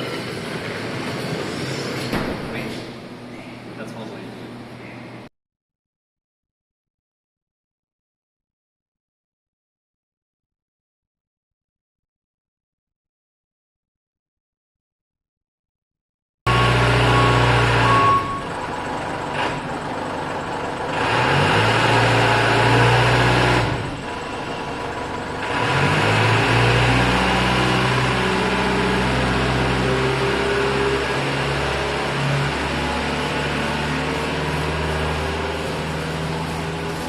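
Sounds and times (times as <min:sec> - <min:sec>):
vehicle engine running: 0:16.5 - 0:37.0.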